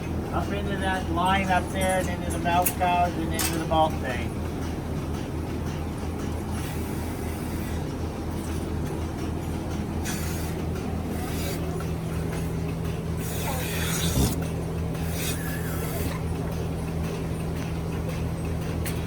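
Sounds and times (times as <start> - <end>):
milking machine humming: 0.0 - 19.0
air hissing: 10.0 - 11.8, 13.2 - 14.4, 15.0 - 16.2.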